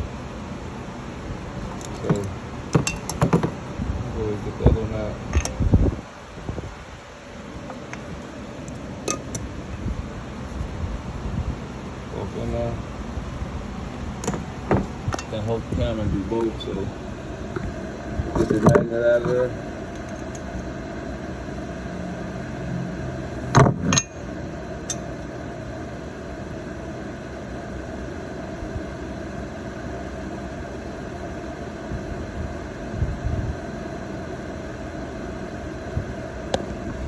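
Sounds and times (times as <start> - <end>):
steady background hum: 0.0 - 37.0
metallic tool clicks: 8.7 - 9.4.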